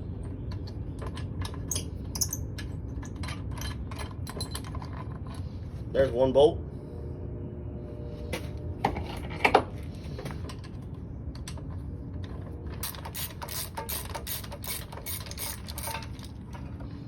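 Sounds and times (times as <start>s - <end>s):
ratchet clicking: 12.8s - 16.3s.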